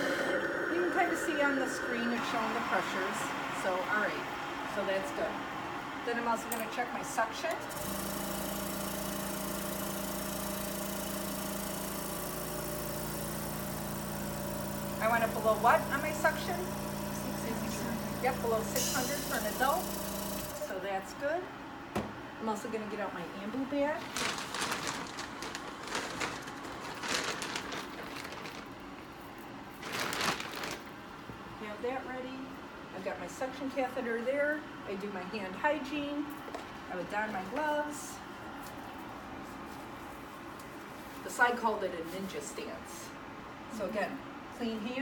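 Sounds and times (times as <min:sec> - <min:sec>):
vacuum pump humming: 0:00.0 - 0:03.7, 0:07.7 - 0:21.0
resuscitation bag rustling: 0:24.0 - 0:31.0.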